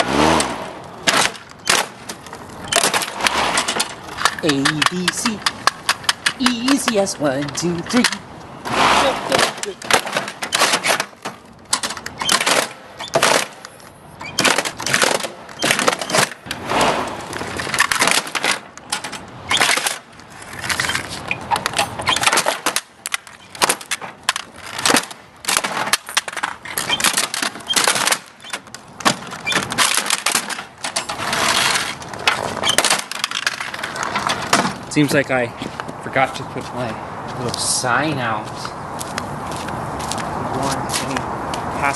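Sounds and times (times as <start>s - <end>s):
plastic cracking and clattering: 1.0s - 7.0s, 9.3s - 13.6s, 14.4s - 16.6s, 17.2s - 34.8s.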